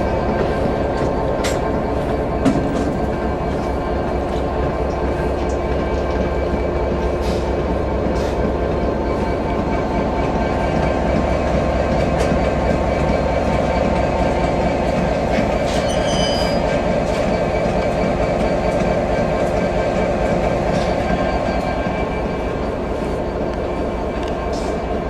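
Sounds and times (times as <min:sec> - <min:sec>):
diesel locomotive running: 0:00.0 - 0:25.0
metallic wheel squeal: 0:15.6 - 0:17.5.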